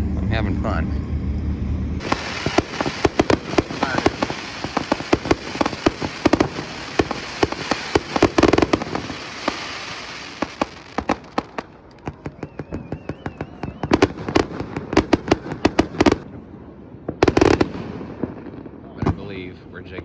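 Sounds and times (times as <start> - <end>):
firework whistle: 0.0 - 14.6
fireworks bangs and crackles: 2.0 - 20.0.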